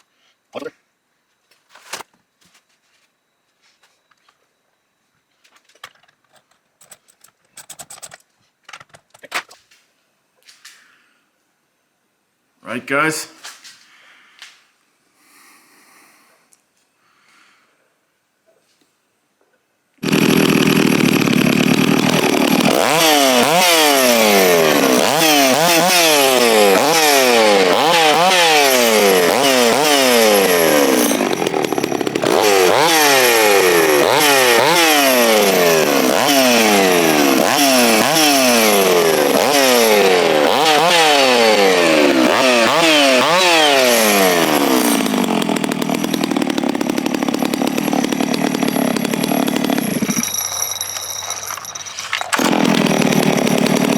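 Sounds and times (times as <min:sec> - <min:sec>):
chainsaw engine revving: 0:20.0 - 0:53.9.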